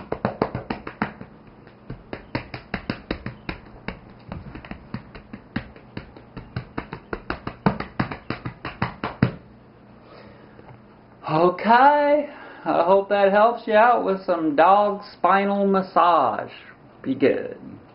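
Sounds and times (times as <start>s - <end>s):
hands patting on a dog: 0.0s - 9.5s.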